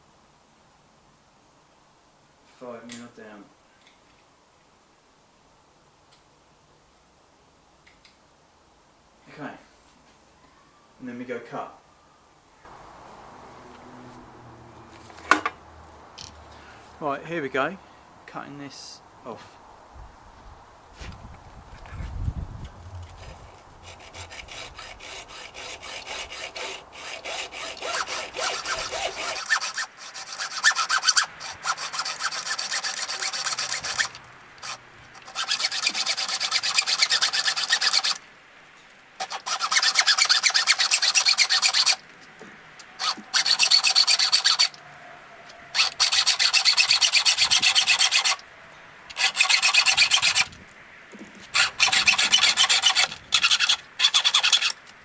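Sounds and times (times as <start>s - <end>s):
saw cutting metal tube: 23.8s - 38.2s, 39.2s - 42.0s, 43.0s - 44.8s, 45.8s - 48.4s, 49.1s - 50.6s, 51.6s - 54.8s.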